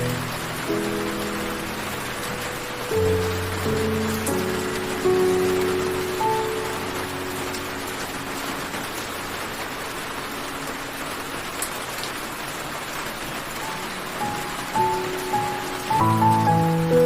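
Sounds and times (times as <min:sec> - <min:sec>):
soft music notes: 0:00.0 - 0:09.6, 0:13.6 - 0:17.0
steady rain falling: 0:00.0 - 0:17.0.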